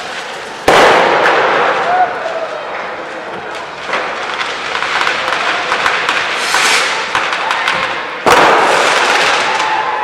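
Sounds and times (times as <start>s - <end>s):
firecracker pops and crackles: 0.0s - 10.0s
loud firework burst: 0.0s - 10.0s.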